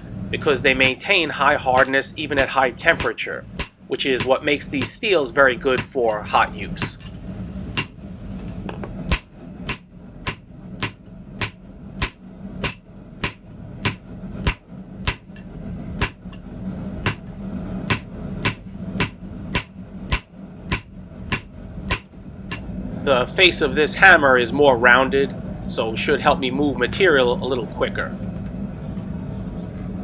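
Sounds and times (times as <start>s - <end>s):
steady low hum: 0.0s - 30.0s
hammer striking steel on anvil: 0.8s - 22.7s.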